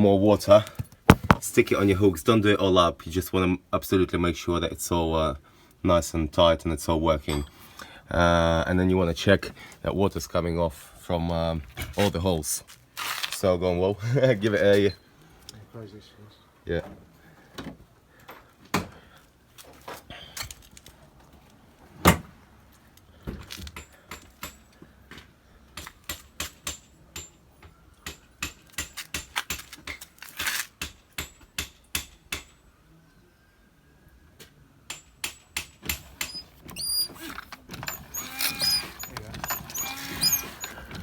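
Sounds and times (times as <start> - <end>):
irregular clicks and knocks: 1.1 - 1.5.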